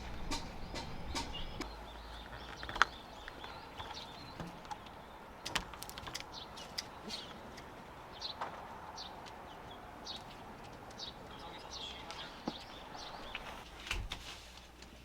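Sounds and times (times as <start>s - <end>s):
low hum: 0.0s - 2.0s
birds chirping faintly: 0.0s - 13.7s.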